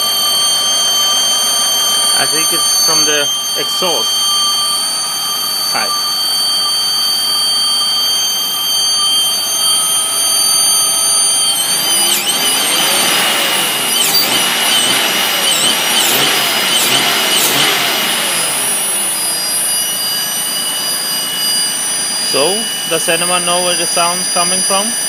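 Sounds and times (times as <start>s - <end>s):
engine running: 0.0s - 25.0s
high-pitched engine whine: 0.0s - 25.0s.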